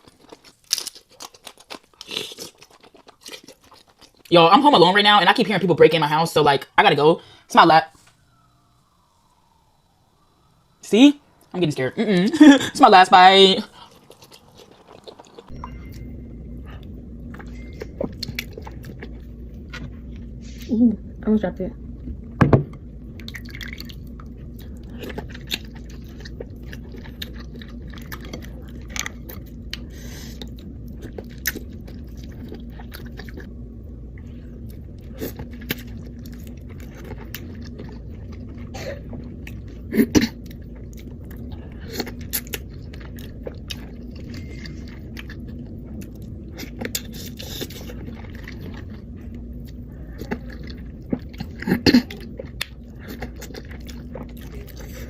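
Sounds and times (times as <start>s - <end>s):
person chewing and biting: 0.0s - 4.3s, 13.7s - 16.0s, 16.6s - 20.6s, 23.2s - 33.5s, 34.5s - 55.0s
low hum: 2.6s - 55.0s.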